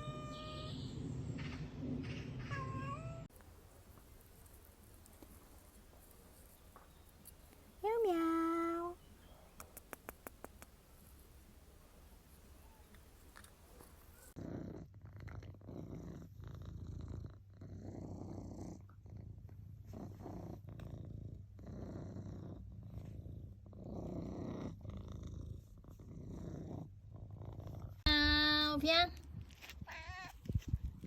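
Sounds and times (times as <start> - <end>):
cat purring: 3.2 - 28.1.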